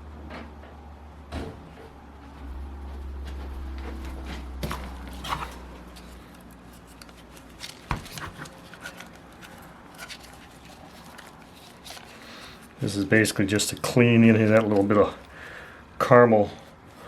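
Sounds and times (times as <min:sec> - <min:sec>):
low hum: 0:00.0 - 0:12.8.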